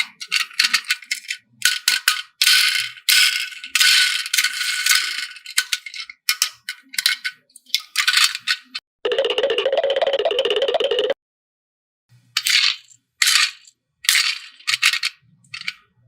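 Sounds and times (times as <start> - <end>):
small hard objects rattling: 12.4 - 15.8.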